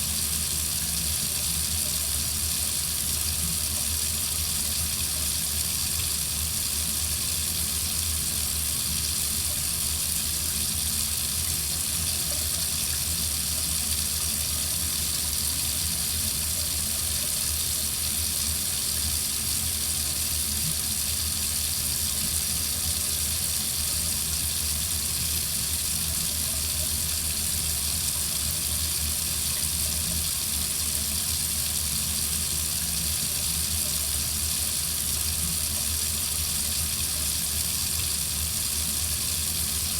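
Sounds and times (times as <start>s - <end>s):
faucet running into sink: 0.0s - 39.9s.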